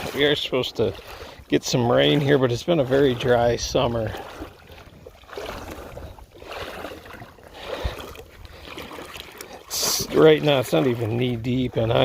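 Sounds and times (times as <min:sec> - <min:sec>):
water sloshing around waders: 0:00.0 - 0:12.0.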